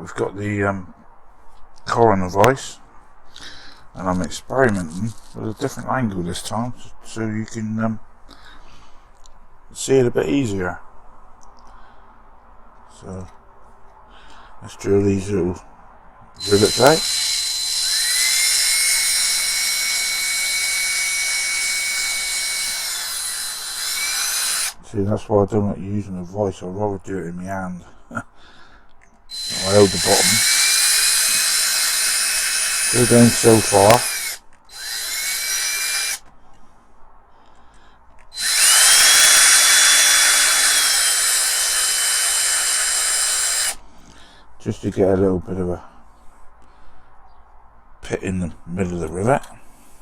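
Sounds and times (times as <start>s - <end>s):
small electric drill whining: 16.4s - 24.8s, 29.3s - 36.2s, 38.3s - 43.8s.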